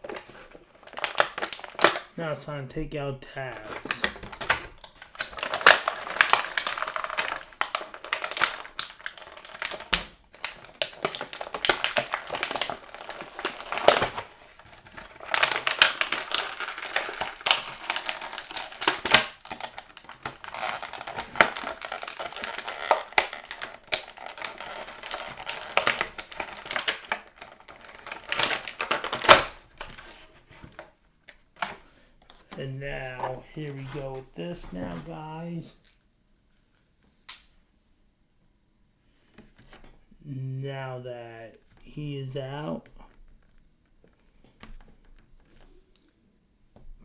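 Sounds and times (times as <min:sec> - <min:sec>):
plastic packaging crinkling: 0:00.0 - 0:02.6, 0:03.3 - 0:35.9
plastic clicks and snaps: 0:37.2 - 0:37.6.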